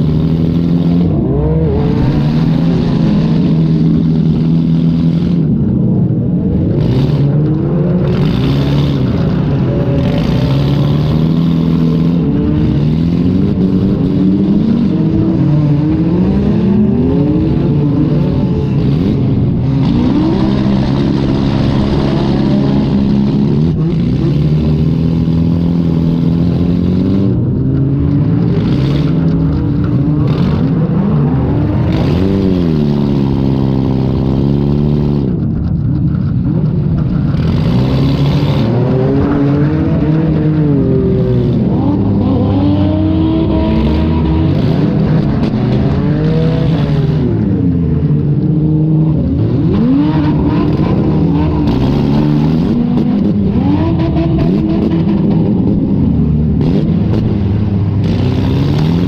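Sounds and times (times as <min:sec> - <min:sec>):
car engine revving: 0:00.0 - 0:59.0.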